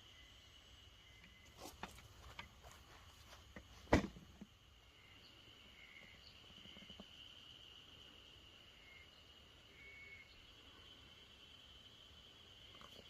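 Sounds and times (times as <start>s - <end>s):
insects trilling: 0.0s - 13.0s.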